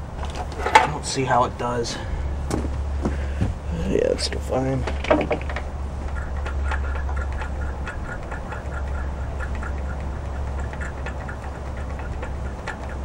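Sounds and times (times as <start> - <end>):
small engine running roughly: 6.0 - 13.0.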